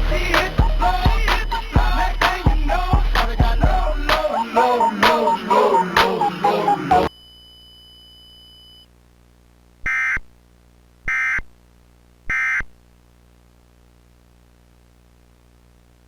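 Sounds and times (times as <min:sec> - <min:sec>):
warbling digital data tones: 0:03.6 - 0:07.1.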